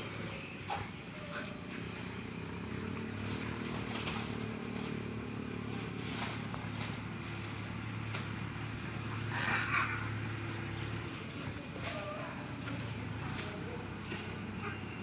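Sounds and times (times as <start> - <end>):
low engine hum: 0.0 - 15.0.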